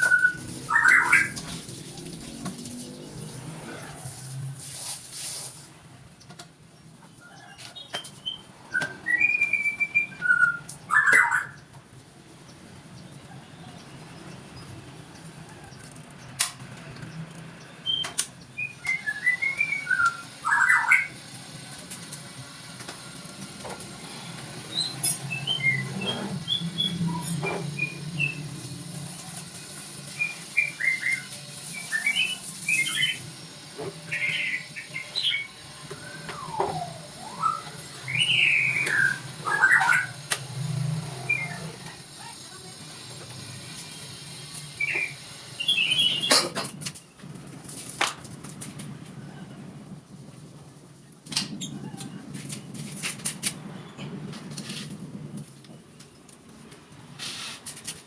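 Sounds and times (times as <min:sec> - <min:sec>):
songbird chirping and whistling: 0:00.0 - 0:01.5, 0:07.3 - 0:11.7, 0:17.8 - 0:21.2, 0:24.7 - 0:28.5, 0:30.1 - 0:33.3, 0:34.0 - 0:40.2, 0:41.2 - 0:41.8, 0:44.8 - 0:46.4.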